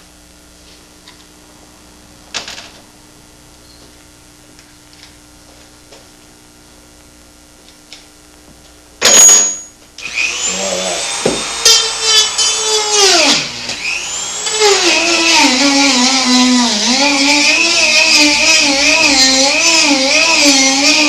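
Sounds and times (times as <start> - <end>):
rotary tool whining: 10.0 - 21.0.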